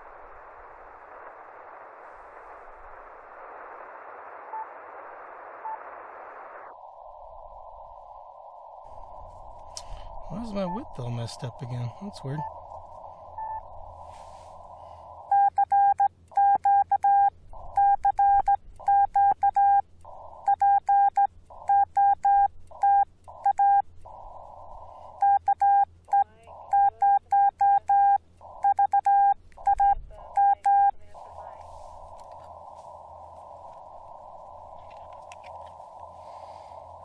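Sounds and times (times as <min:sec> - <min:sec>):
radio receiver hiss: 0:00.0 - 0:16.4, 0:17.2 - 0:27.0, 0:27.6 - 0:37.0
morse code beeps: 0:10.6 - 0:10.9, 0:13.4 - 0:13.6, 0:15.2 - 0:19.8, 0:20.4 - 0:23.8, 0:25.2 - 0:31.0.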